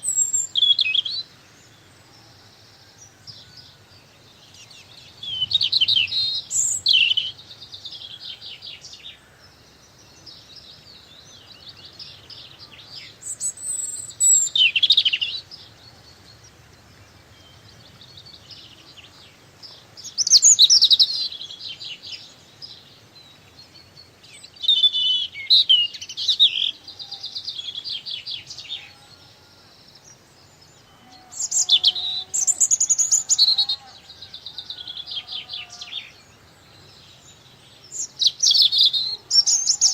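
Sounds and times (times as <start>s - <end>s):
songbird trilling: 0.0s - 1.2s, 4.6s - 9.6s, 11.5s - 16.5s, 20.0s - 22.8s, 23.8s - 39.9s.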